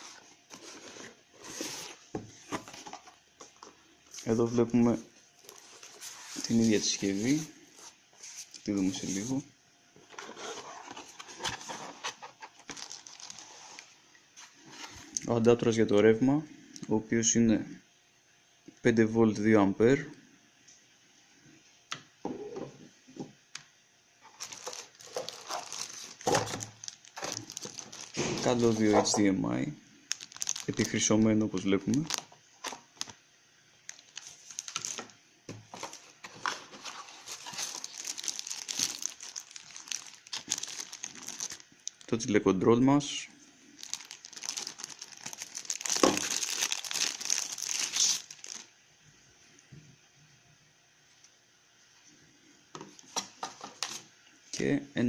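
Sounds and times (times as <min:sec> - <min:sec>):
plastic packaging crinkling: 0:05.4 - 0:09.4, 0:10.2 - 0:14.6, 0:24.2 - 0:29.2, 0:30.1 - 0:33.2, 0:33.8 - 0:42.2, 0:43.8 - 0:48.7.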